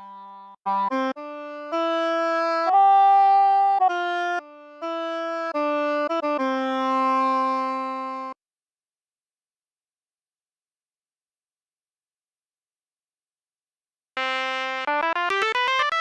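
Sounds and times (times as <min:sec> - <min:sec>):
solo wind instrument melody: 0:00.0 - 0:08.4.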